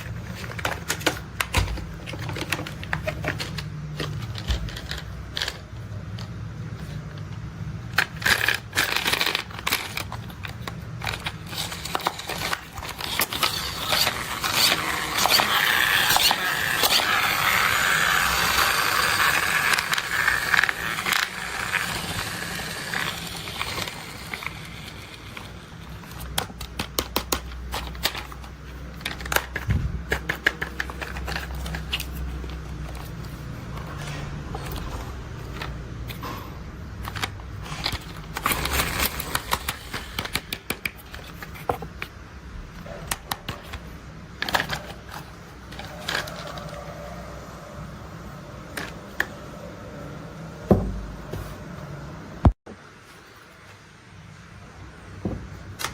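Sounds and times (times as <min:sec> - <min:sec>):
toy vehicles clicking and knocking: 0:00.0 - 0:06.4, 0:07.1 - 0:33.9, 0:37.0 - 0:42.1, 0:43.0 - 0:46.9
toy scraping and rattling: 0:00.0 - 0:42.2, 0:42.8 - 0:49.5.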